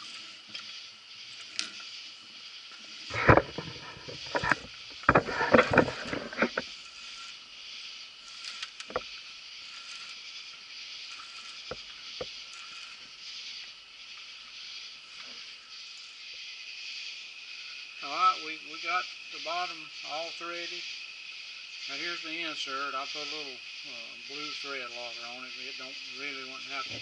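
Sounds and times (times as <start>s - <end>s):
steady hiss: 0.0s - 27.0s
metal scraping and clanking: 3.1s - 7.3s.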